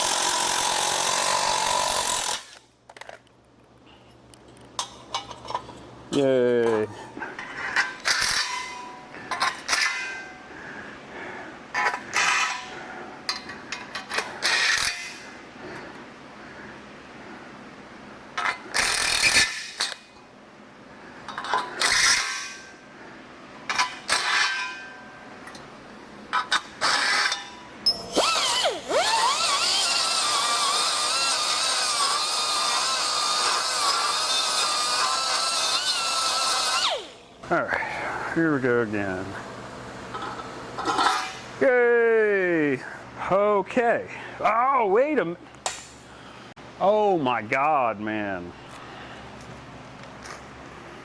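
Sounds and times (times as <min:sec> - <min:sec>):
power tool grinding metal: 0:00.0 - 0:02.6, 0:28.1 - 0:37.2.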